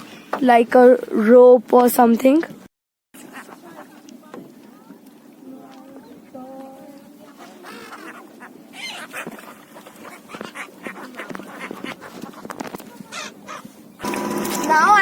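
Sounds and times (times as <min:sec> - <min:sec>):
water birds calling: 0:03.2 - 0:15.0.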